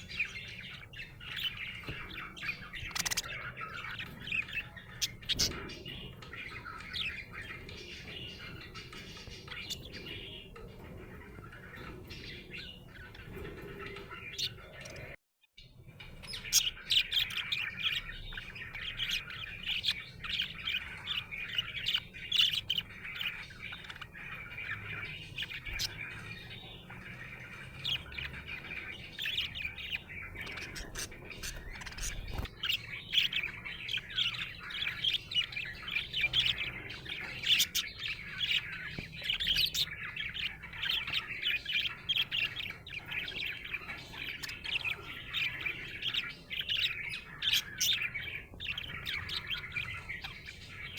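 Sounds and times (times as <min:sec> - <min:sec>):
budgerigars chirping and warbling: 0:00.0 - 0:50.9.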